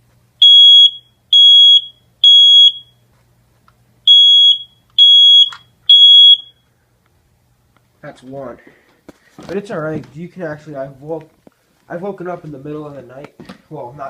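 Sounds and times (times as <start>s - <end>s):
smoke detector alarm beeps: 0.4s - 3.0s, 4.1s - 6.7s.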